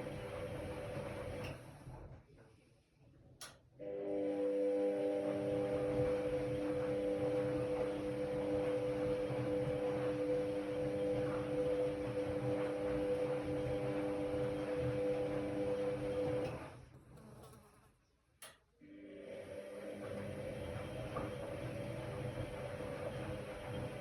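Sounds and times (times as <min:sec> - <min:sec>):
washer-dryer humming and rumbling: 0:00.0 - 0:02.6, 0:03.2 - 0:24.0.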